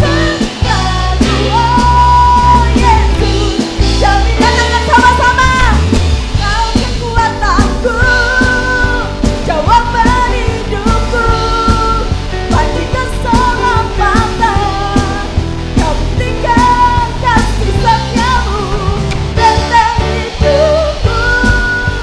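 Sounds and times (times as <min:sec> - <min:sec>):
live band playing: 0:00.0 - 0:22.0
worship song singing: 0:00.0 - 0:22.0.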